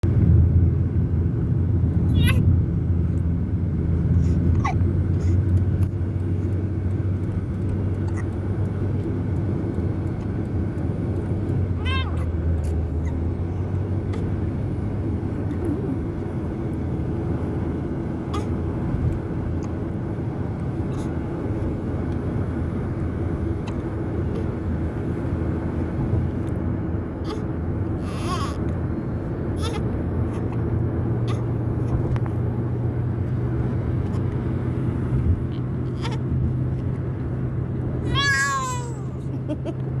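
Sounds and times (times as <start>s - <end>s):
baby crying: 2.1s - 2.4s, 11.8s - 12.3s, 27.2s - 27.4s, 28.0s - 28.7s, 29.6s - 30.5s, 35.9s - 36.3s, 38.0s - 39.3s
baby hiccuping: 18.3s - 18.5s, 29.6s - 29.8s, 31.2s - 31.4s.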